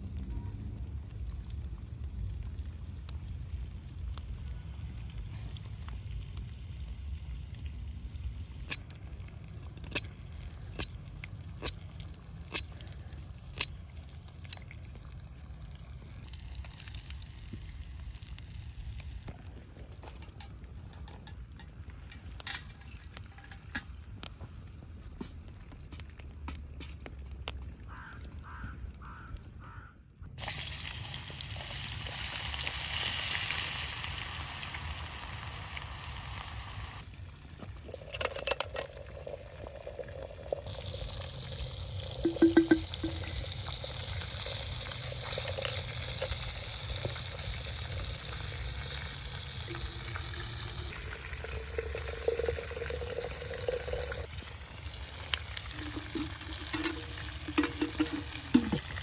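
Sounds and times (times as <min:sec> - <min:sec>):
food sizzling in a pan: 0:30.4 - 0:37.0, 0:40.5 - 0:53.4.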